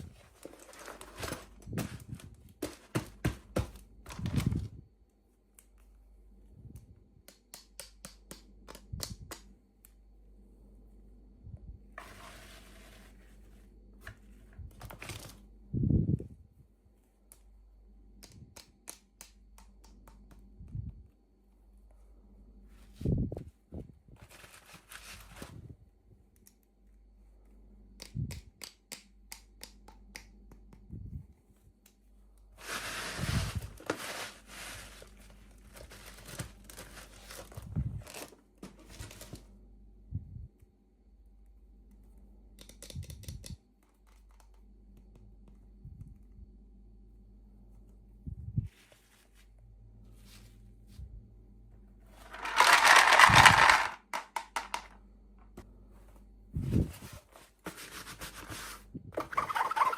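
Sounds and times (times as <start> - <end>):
small clicks and taps: 18.2 - 20.5, 41.8 - 45.6.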